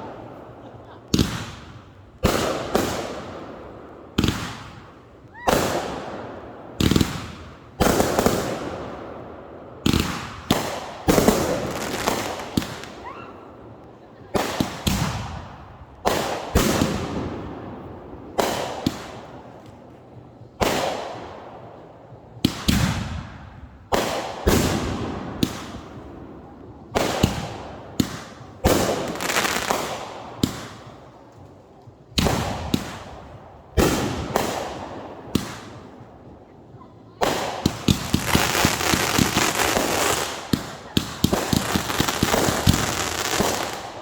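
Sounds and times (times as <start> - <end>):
fireworks banging and crackling: 0.0 - 44.0.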